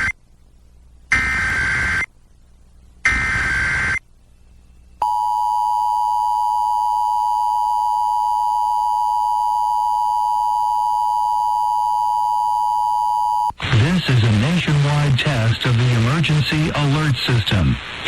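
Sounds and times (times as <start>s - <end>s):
screechy data squawk: 1.1s - 2.1s, 3.1s - 4.0s.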